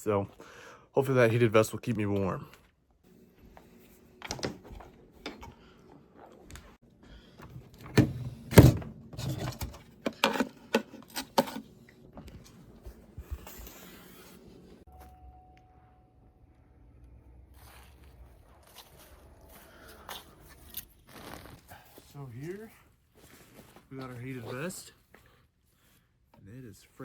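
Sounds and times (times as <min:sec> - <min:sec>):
faint steady tone: 0:14.8 - 0:17.5.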